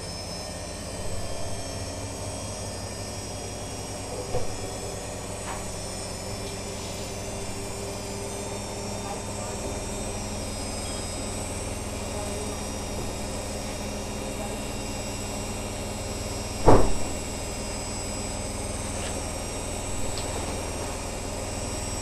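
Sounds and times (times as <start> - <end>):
steady machine tones: 0.0 - 22.0
washing machine humming: 0.0 - 22.0
loud thud: 16.6 - 17.3.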